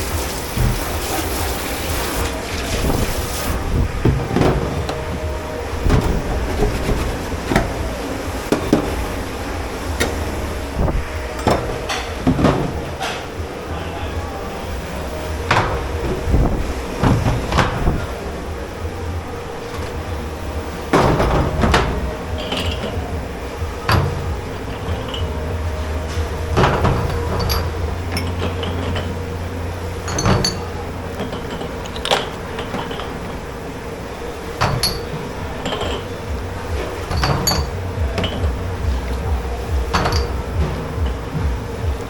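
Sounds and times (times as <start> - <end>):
steady machine hum: 0.0 - 42.0
dishes and cutlery clanking: 4.0 - 9.2, 11.2 - 13.4, 20.9 - 33.7, 34.4 - 42.0.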